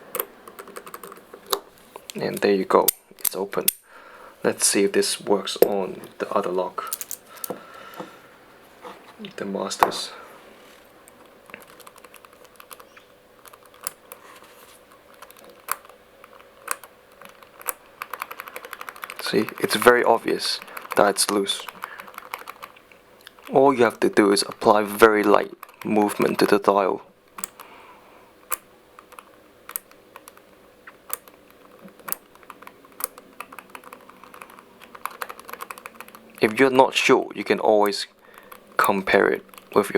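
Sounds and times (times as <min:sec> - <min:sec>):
padlock dials clicking: 0:06.8 - 0:08.0, 0:14.9 - 0:26.6, 0:27.3 - 0:27.7, 0:28.4 - 0:36.7
padlock dial clicking: 0:31.1 - 0:36.2.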